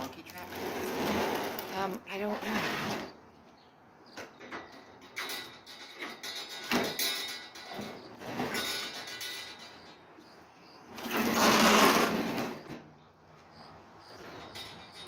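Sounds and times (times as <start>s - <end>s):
bin clattering and knocking: 4.5s - 9.8s.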